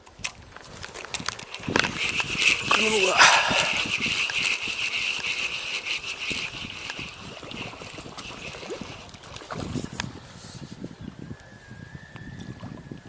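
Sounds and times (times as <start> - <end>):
river water running: 1.4 - 9.8.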